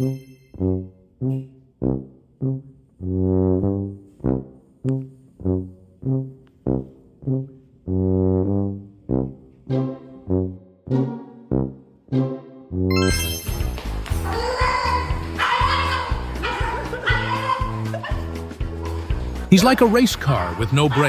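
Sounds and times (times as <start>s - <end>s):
bouncy low-note background music: 7.2s - 21.0s.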